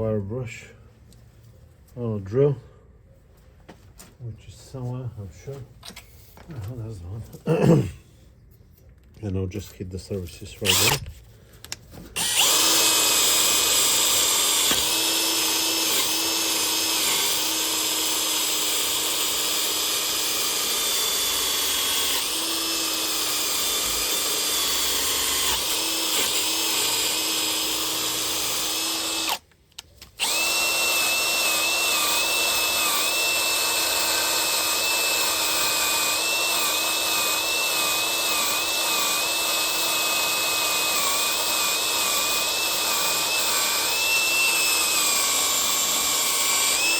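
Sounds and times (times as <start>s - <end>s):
electric drill with wire brush: 10.6s - 11.1s, 12.2s - 29.4s, 30.1s - 46.9s.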